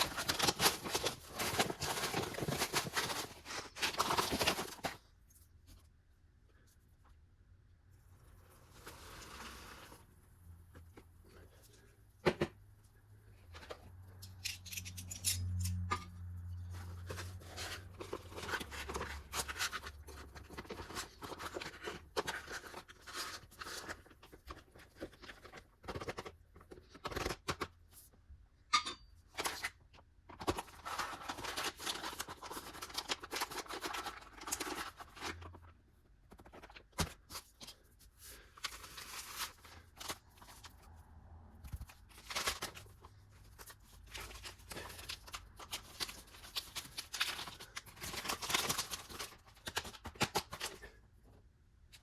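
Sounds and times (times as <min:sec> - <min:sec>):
plastic and foil packets rustling: 0:00.0 - 0:05.6, 0:16.8 - 0:27.5, 0:29.3 - 0:40.9, 0:41.6 - 0:51.0.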